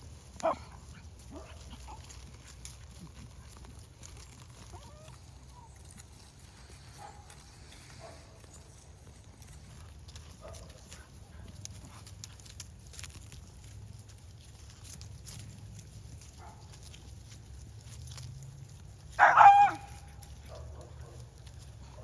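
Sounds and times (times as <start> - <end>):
clicks and knocks of hooves: 0.0 - 22.0
low steady rumble: 0.0 - 22.0
faint animal calls: 4.6 - 6.0.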